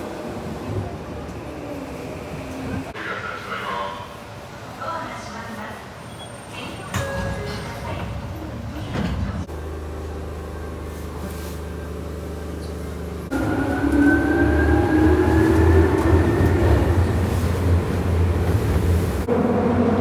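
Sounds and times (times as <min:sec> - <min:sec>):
electric train hum: 0:06.8 - 0:20.0
train motor whine rising: 0:13.3 - 0:16.7.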